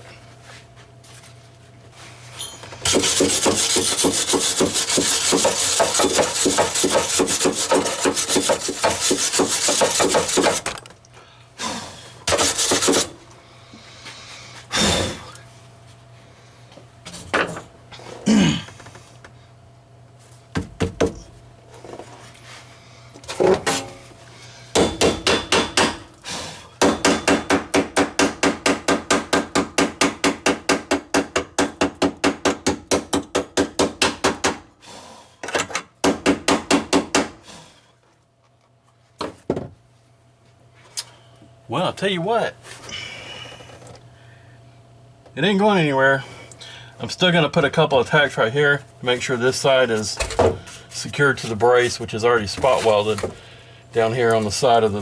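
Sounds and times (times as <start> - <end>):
scraping metal welds: 2.8 - 10.6.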